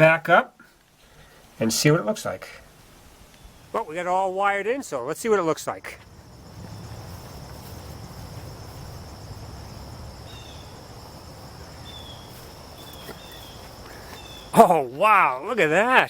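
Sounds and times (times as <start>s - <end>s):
insects trilling: 0.0s - 16.0s
low steady rumble: 6.0s - 12.7s.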